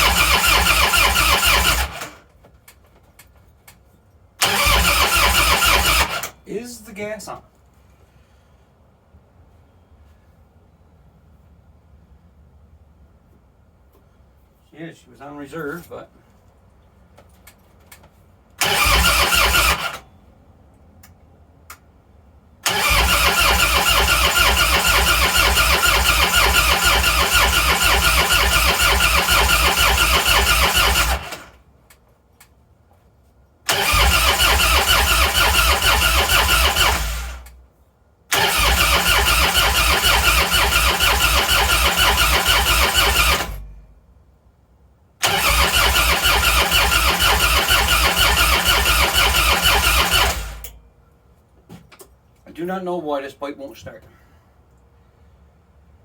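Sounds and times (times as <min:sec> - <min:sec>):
motorcycle starter cranking: 0:00.0 - 0:02.3, 0:04.4 - 0:06.4, 0:18.6 - 0:20.0, 0:22.6 - 0:31.6, 0:33.7 - 0:37.6, 0:38.3 - 0:43.7, 0:45.2 - 0:50.8.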